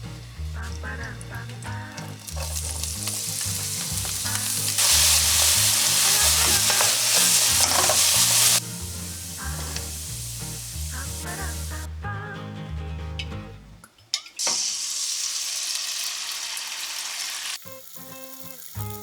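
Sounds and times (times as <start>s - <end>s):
food sizzling in frying pan: 0.0s - 11.9s, 14.4s - 19.0s
spatula scraping pan: 2.0s - 11.8s.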